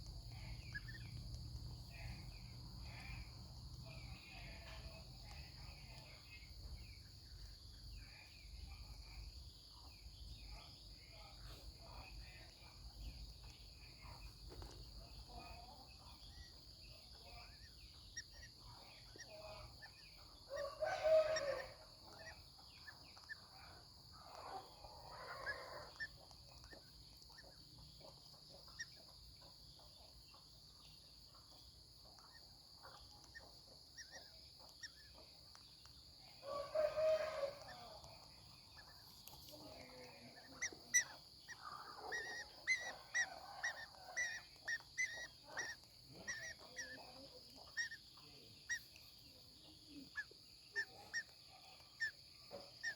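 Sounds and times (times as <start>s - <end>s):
bird chirps and clicks: 0.0s - 7.8s, 12.1s - 16.8s, 22.1s - 24.7s, 25.8s - 36.2s, 37.0s - 49.2s, 49.9s - 52.9s
parrot chick squawking: 39.8s - 48.0s.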